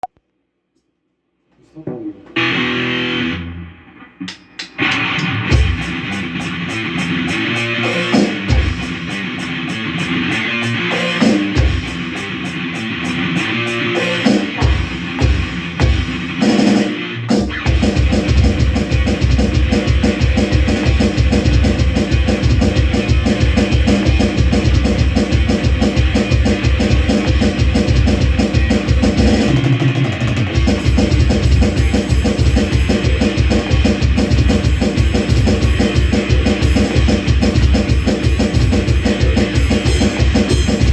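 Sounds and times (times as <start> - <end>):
electric guitar playing: 1.9 - 40.9
fast steady drumming: 5.5 - 9.8, 11.0 - 12.3, 14.0 - 40.9.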